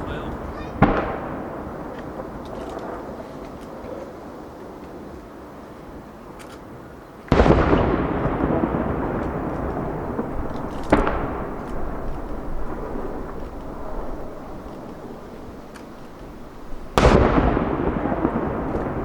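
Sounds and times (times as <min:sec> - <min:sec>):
firework shells bursting: 0:00.0 - 0:05.0, 0:07.3 - 0:19.0
rolling rumble: 0:07.3 - 0:19.0.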